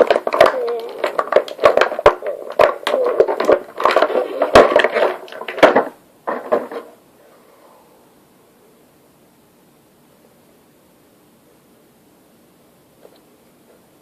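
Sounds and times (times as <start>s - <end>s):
indistinct voices: 0.0s - 1.4s
plastic and cardboard crackling: 0.0s - 7.0s.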